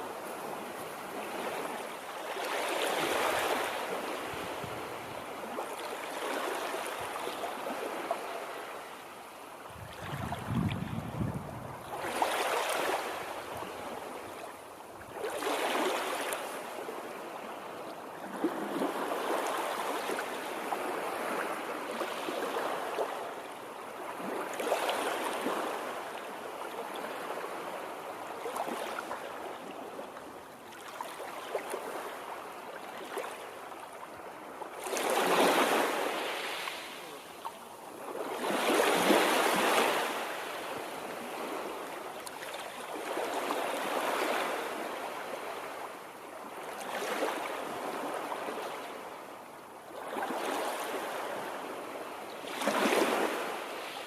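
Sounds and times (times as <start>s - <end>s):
water rushing and splashing: 9.7s - 13.5s.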